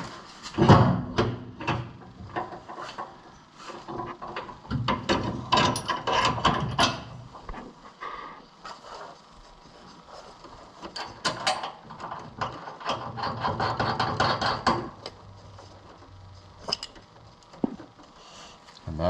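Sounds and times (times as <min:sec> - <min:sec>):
metal tools clinking and knocking: 0:05.5 - 0:07.0.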